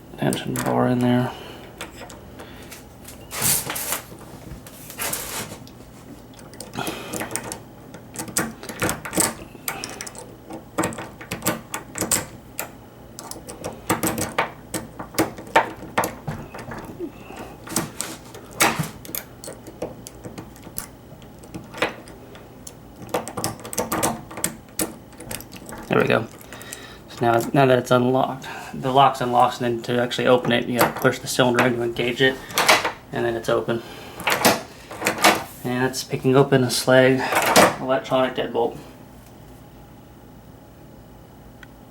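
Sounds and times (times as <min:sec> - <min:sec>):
lock pick clicking and scraping: 0:01.7 - 0:04.1, 0:06.4 - 0:26.8.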